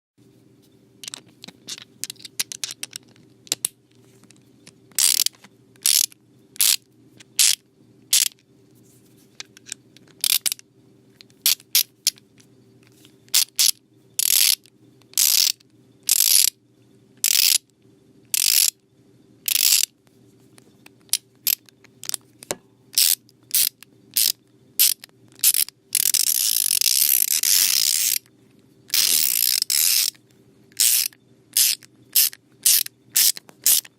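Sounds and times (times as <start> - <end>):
ratchet wrench clicking: 5.0 - 6.8, 7.4 - 8.4, 10.2 - 10.6, 13.3 - 16.6, 17.2 - 17.6, 18.3 - 18.8, 19.5 - 19.9, 23.0 - 28.3, 28.9 - 30.2, 30.8 - 33.9.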